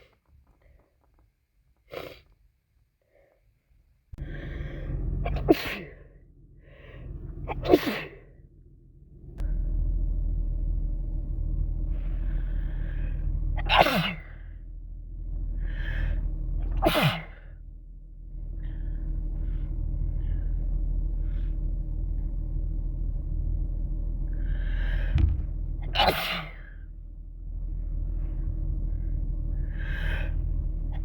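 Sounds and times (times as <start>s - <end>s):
breaths and sniffs: 1.8s - 2.4s
steady low hum: 4.2s - 31.0s
person sneezing: 13.7s - 14.3s, 16.8s - 17.3s.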